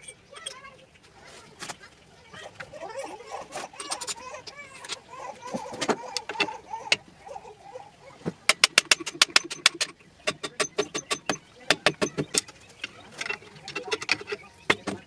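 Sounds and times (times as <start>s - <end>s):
indistinct voices: 0.0s - 15.0s.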